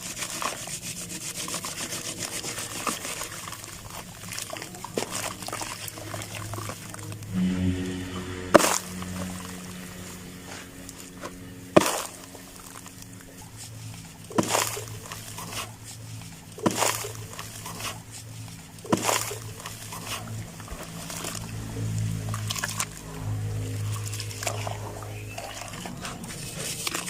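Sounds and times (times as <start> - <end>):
cement chunks crunching: 11.7 - 20.9.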